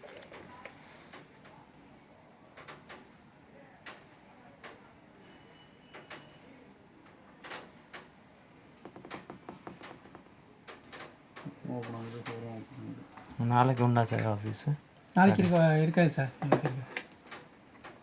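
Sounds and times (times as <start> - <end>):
alarm panel beeping: 6.2 - 6.5, 12.0 - 12.2, 15.4 - 15.6.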